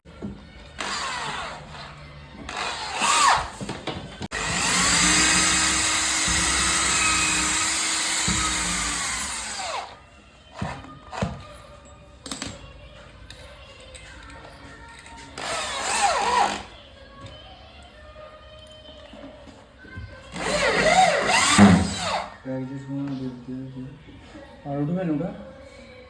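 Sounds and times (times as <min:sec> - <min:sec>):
power drill driving screws: 0:00.8 - 0:01.9, 0:02.5 - 0:03.6, 0:04.3 - 0:10.0, 0:15.4 - 0:16.7, 0:20.3 - 0:22.4.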